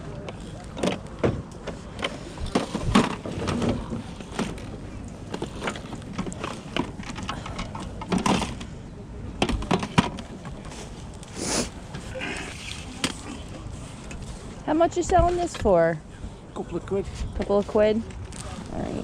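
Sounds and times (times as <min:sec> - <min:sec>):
objects clicking and clattering: 0:00.2 - 0:08.7.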